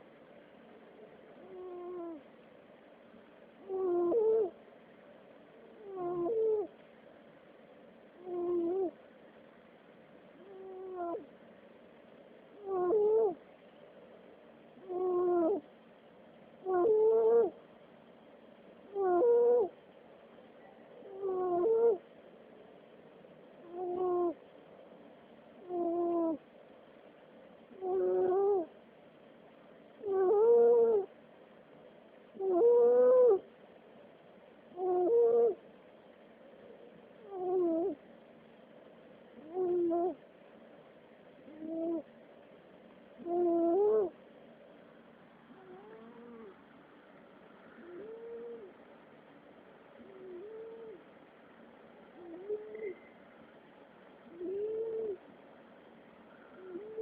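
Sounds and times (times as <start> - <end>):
cat snoring squeakily: 37.2 - 38.0, 45.6 - 46.5.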